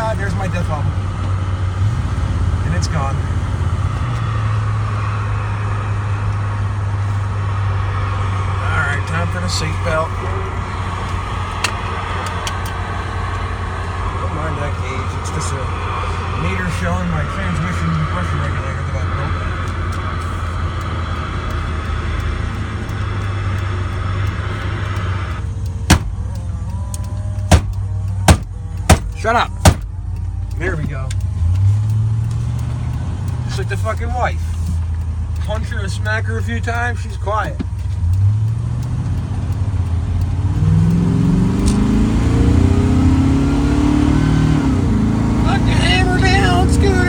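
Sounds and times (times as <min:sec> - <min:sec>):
truck engine running: 0:00.0 - 0:47.0
sharp knock: 0:25.9 - 0:26.2, 0:27.5 - 0:27.7, 0:28.3 - 0:29.9.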